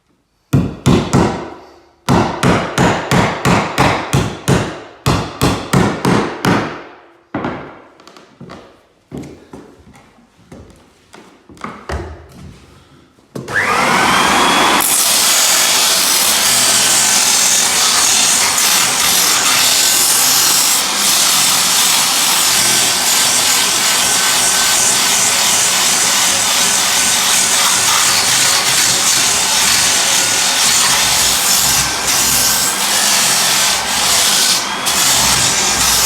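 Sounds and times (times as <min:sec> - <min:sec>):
power tool working wood floor: 0:13.4 - 0:36.0.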